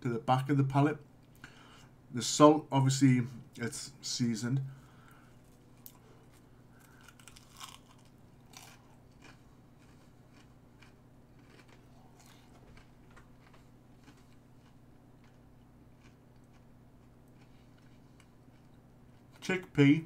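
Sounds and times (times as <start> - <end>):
low steady hum: 0.0 - 20.0
crunchy chewing: 5.0 - 19.4.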